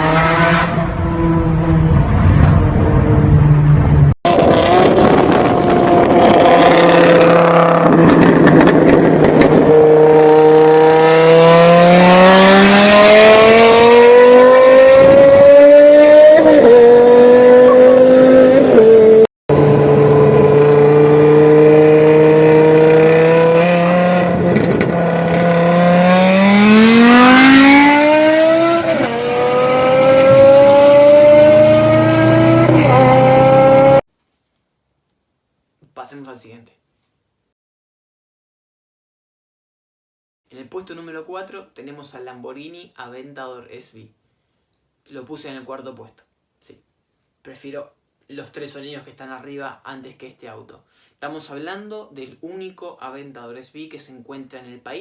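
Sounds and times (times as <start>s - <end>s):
car engine accelerating hard: 0.0s - 34.0s.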